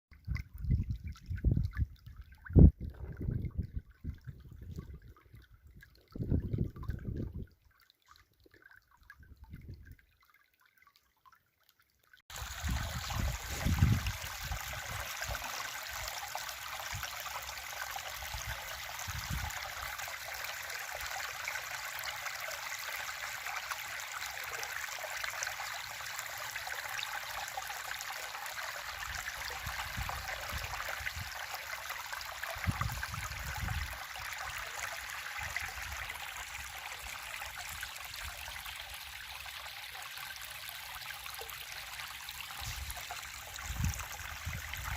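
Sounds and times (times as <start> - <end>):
stream water rushing: 12.3 - 44.9.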